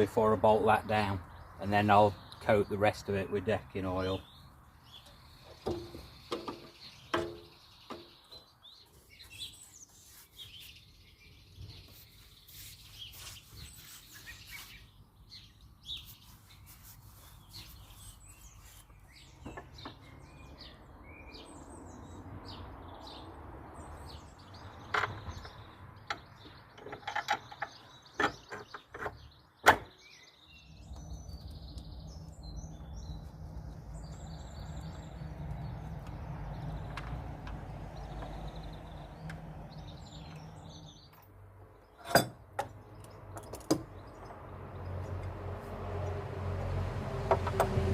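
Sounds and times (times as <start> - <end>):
birds chirping: 0.0 - 46.2
tools clicking and knocking: 26.1 - 29.8.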